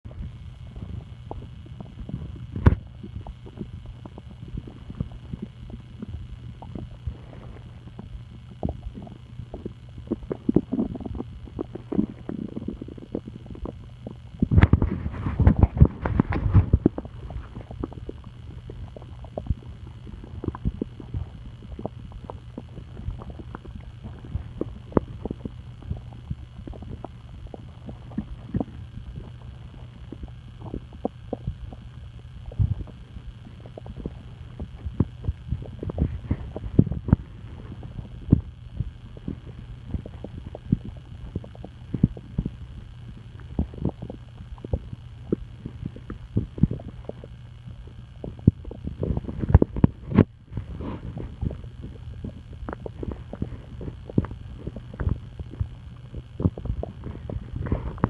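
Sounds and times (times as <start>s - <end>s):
steady low hum: 0.0s - 58.0s
stomach gurgling: 0.0s - 58.0s.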